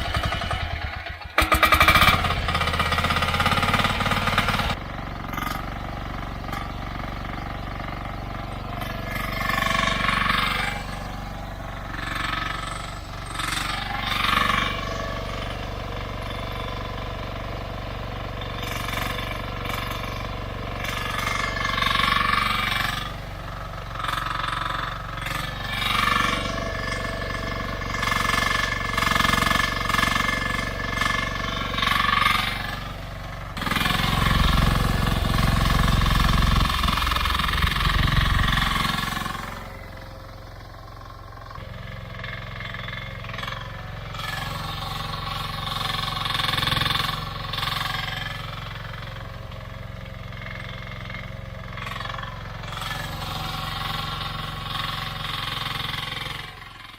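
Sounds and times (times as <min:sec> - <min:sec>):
excavator engine running: 0:00.0 - 0:56.9.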